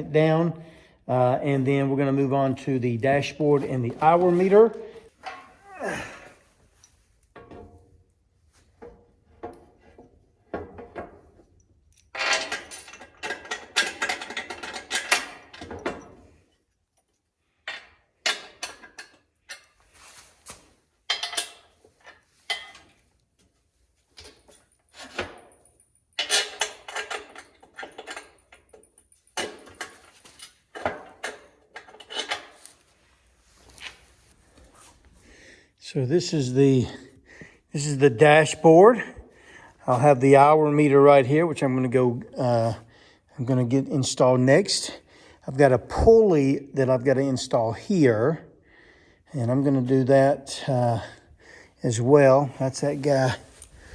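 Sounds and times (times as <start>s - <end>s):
metal tools clinking and rattling: 3.4s - 6.0s, 8.8s - 16.6s, 21.1s - 23.0s, 24.1s - 32.8s
metal clanks: 24.2s - 32.7s.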